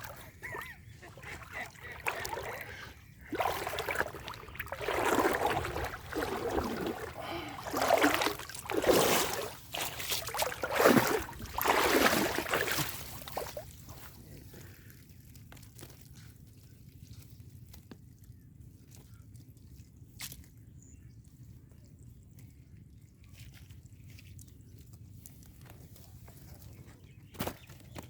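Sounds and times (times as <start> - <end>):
water sloshing and splashing: 0.0 - 14.4
water dripping: 3.3 - 13.6.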